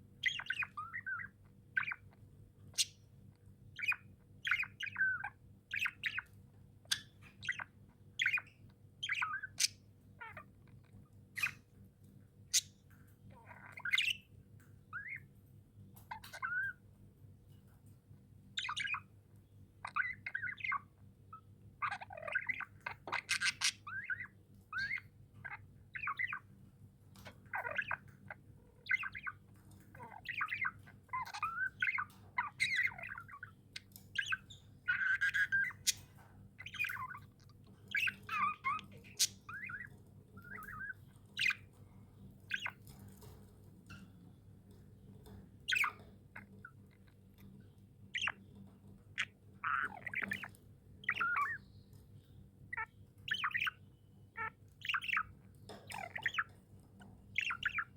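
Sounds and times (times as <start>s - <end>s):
budgerigars chirping and squawking: 0.2s - 11.7s, 12.4s - 15.3s, 16.0s - 16.8s, 18.5s - 19.2s, 19.8s - 26.6s, 27.2s - 57.9s.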